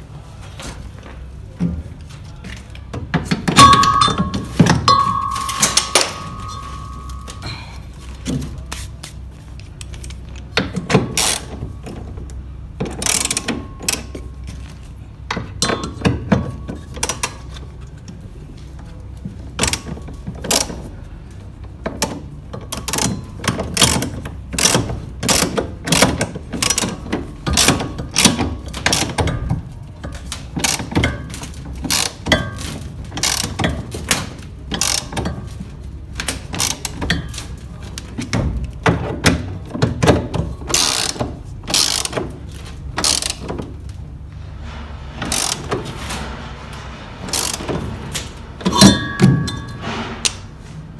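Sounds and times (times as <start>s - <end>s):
low steady hum: 0.0s - 8.7s
ratchet wrench clicking: 11.2s - 11.5s, 13.0s - 14.1s, 33.2s - 33.7s, 34.7s - 35.3s, 36.6s - 37.2s, 40.7s - 43.5s, 45.3s - 45.7s, 47.3s - 47.6s.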